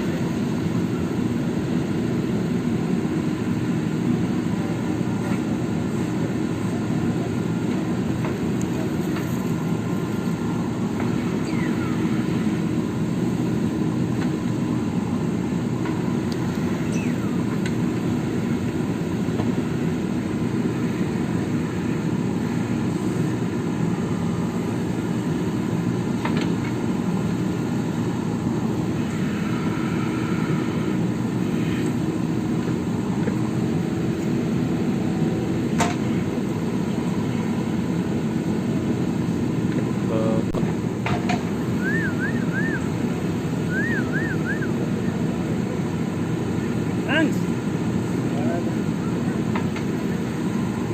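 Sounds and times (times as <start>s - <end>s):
diesel engine running: 0.0s - 50.9s.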